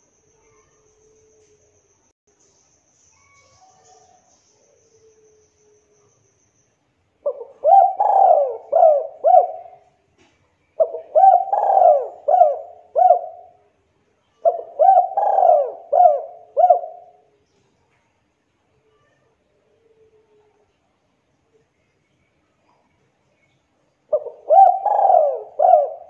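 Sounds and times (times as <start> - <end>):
dove cooing: 7.2 - 9.9, 10.8 - 13.6, 14.4 - 17.2, 24.1 - 26.0.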